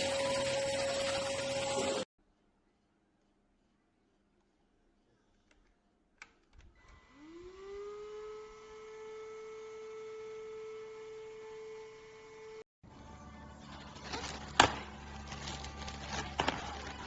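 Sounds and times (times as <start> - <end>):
vacuum motor whine: 7.0 - 12.6.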